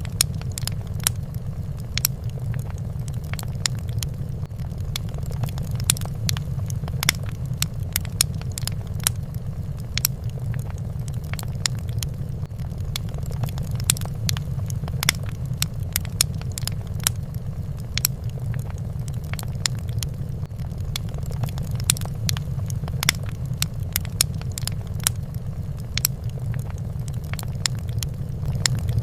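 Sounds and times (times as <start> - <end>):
fire crackling and popping: 0.0 - 29.0
low rumble: 0.0 - 29.0.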